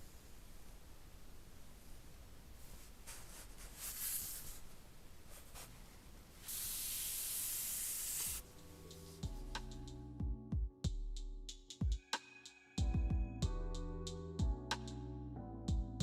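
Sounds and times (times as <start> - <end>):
steady hiss: 0.0 - 10.0
music with deep bass: 8.4 - 16.0.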